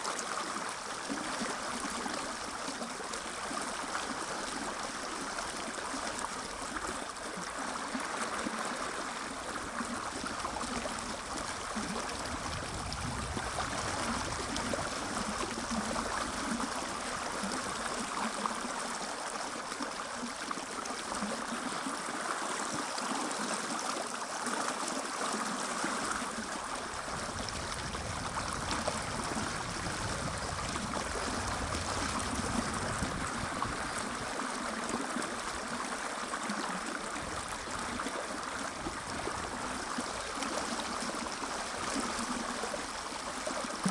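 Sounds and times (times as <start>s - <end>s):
river rushing over stones: 0.0s - 43.9s.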